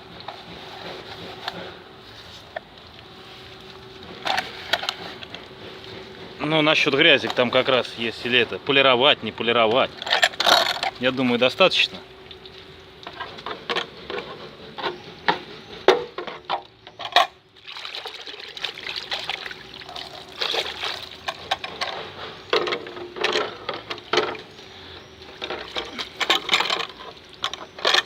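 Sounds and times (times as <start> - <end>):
water splashing and trickling: 9.3 - 13.7, 17.4 - 28.0.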